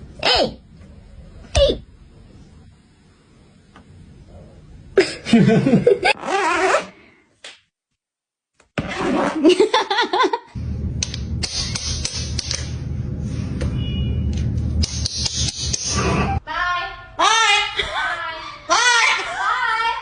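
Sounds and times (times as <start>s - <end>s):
steady low hum: 0.0s - 6.2s, 10.5s - 20.0s
scattered clicks: 11.0s - 12.8s.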